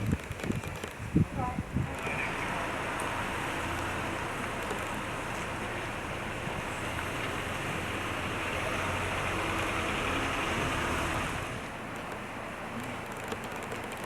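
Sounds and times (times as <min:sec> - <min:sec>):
vehicle passing: 0:01.8 - 0:11.8.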